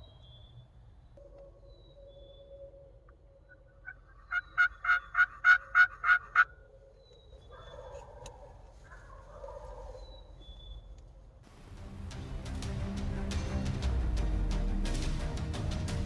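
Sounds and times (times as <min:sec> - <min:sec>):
wild turkey yelping: 0:01.2 - 0:10.8.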